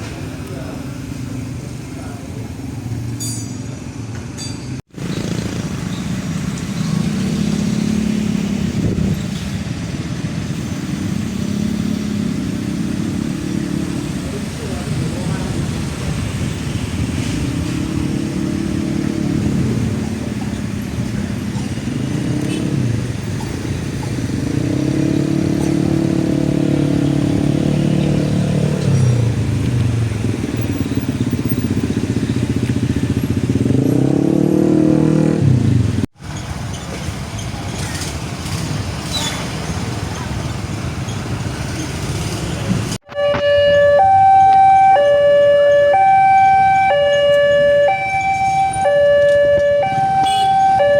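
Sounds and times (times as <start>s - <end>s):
engines revving and passing: 4.9s - 50.9s
level crossing two-tone alarm: 43.1s - 50.9s.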